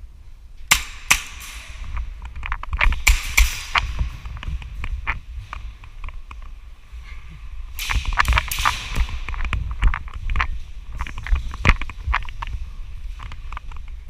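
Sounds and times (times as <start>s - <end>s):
low rumble: 0.0s - 14.0s
airsoft pistols firing: 0.7s - 2.0s, 2.8s - 4.1s.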